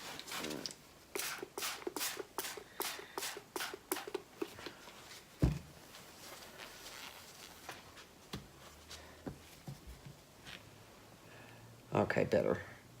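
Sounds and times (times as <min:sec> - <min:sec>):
spray bottle squirts: 0:00.2 - 0:04.6.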